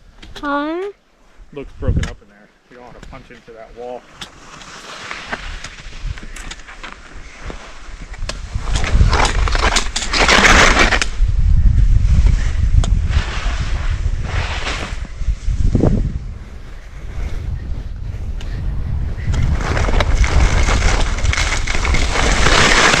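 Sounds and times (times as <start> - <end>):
wind rumbling on microphone: 1.4 - 2.2, 5.2 - 23.0
skis scraping over snow: 3.5 - 6.2, 7.3 - 11.1, 13.0 - 15.6, 19.4 - 23.0.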